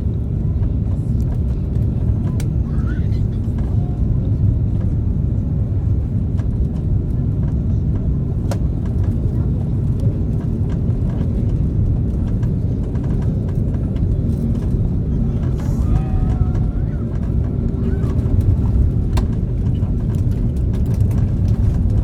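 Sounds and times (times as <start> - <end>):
airplane cabin rumble: 0.0 - 22.0.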